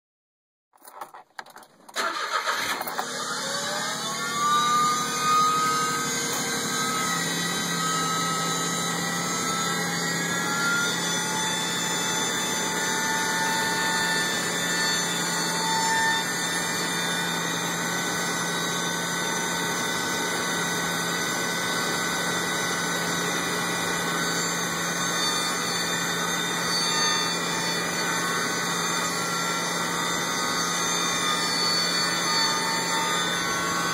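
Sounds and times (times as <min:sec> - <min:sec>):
car engine cranking and running: 0:00.8 - 0:04.0.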